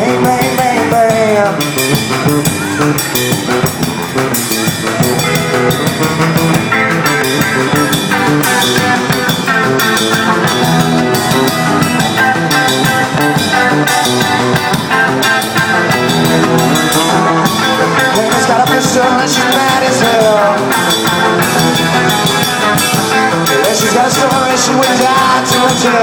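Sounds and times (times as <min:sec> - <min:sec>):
drum-kit beat: 0:00.0 - 0:26.0
guitar: 0:00.0 - 0:26.0
rock band instrumental: 0:00.0 - 0:26.0.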